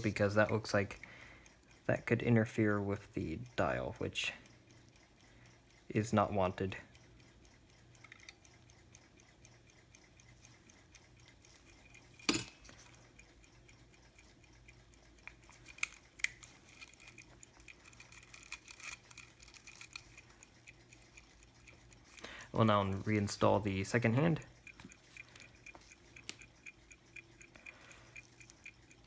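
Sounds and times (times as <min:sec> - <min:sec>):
pocket watch ticking: 0:00.0 - 0:29.0
sharp clicks: 0:06.8 - 0:29.0.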